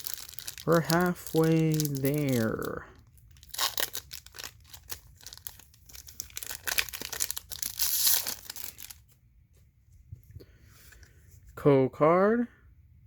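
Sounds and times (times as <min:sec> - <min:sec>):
foil wrapper crinkling and tearing: 0:00.0 - 0:09.1.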